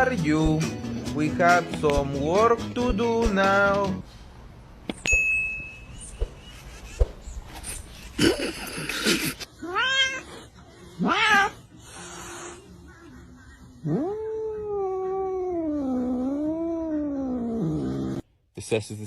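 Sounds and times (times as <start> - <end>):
animal crying: 8.3 - 18.2.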